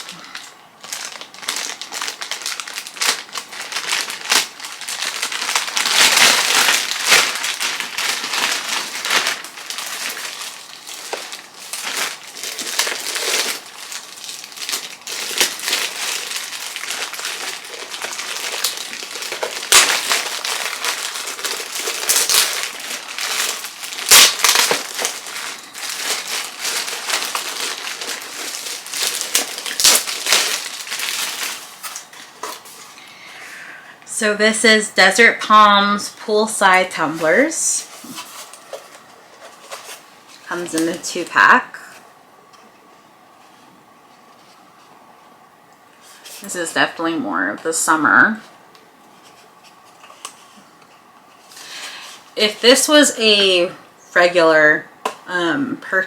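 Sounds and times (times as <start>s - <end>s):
packaging crinkling and rustling: 0.0s - 33.2s, 36.6s - 42.0s, 48.4s - 53.4s.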